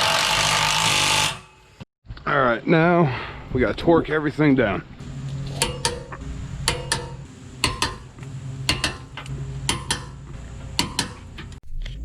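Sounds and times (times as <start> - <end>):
wrench clicking: 10.8 - 11.2.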